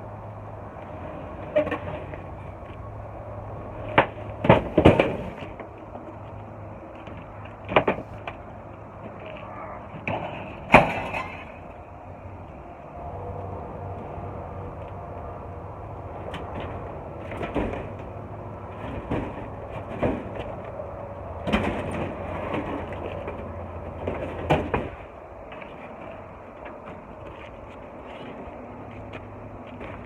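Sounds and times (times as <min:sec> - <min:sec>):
knocks and clunks of metal scrap: 0:03.9 - 0:05.6, 0:09.9 - 0:11.7, 0:16.2 - 0:20.7, 0:21.4 - 0:26.0.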